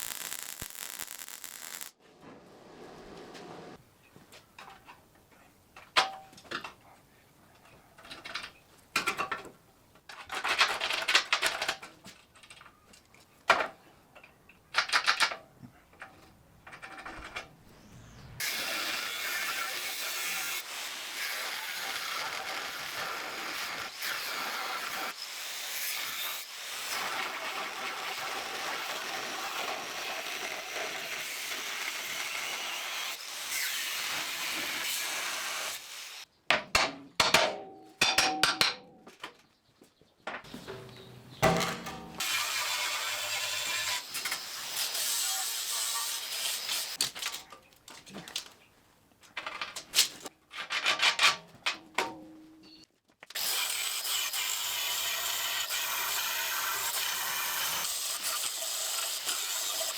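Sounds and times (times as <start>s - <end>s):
welder crackling hiss: 0.0s - 2.0s, 20.6s - 36.2s
welder sizzling hiss: 0.0s - 2.0s, 20.0s - 36.2s.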